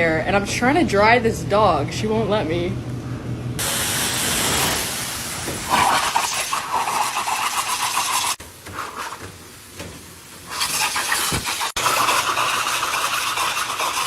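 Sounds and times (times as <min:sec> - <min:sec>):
blow dryer blowing: 0:03.6 - 0:08.4.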